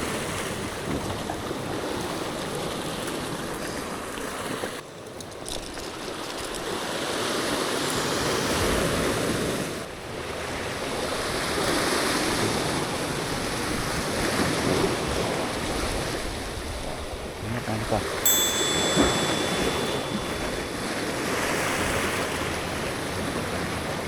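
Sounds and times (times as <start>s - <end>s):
sea surf washing on shore: 5.8s - 24.0s.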